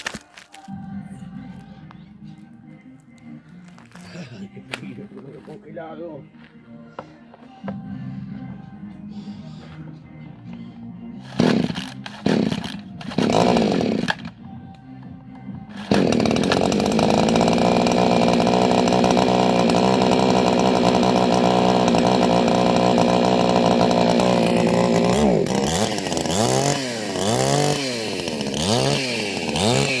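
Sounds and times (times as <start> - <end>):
chainsaw engine starting and revving: 11.2 - 14.4, 15.7 - 30.0.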